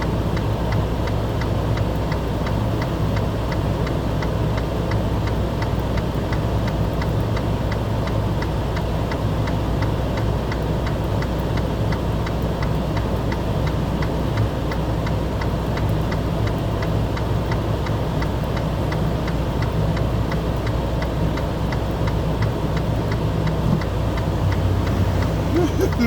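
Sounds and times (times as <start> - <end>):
vehicle rumble: 0.0 - 26.0
even ticking: 19.6 - 26.0.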